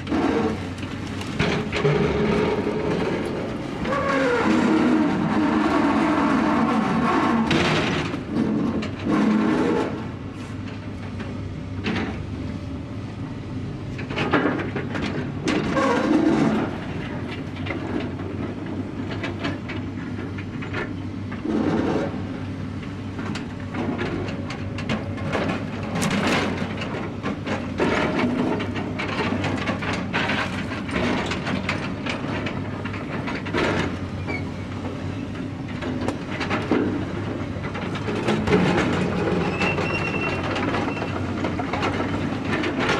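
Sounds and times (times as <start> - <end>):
low machinery rumble: 0.0 - 42.9.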